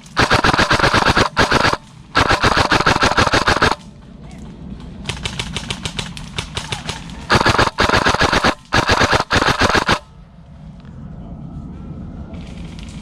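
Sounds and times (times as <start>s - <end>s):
airsoft guns firing bursts: 0.0s - 3.8s, 6.6s - 10.0s.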